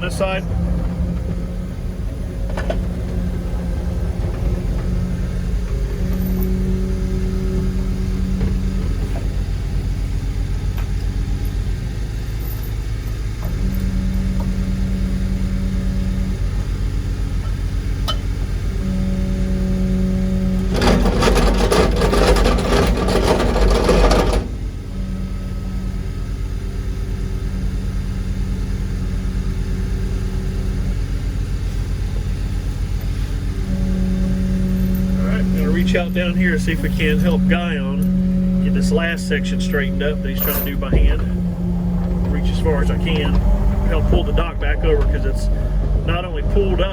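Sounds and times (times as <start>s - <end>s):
barge engine humming: 0.0s - 46.9s
vibratory hammer buzzing: 0.0s - 46.9s.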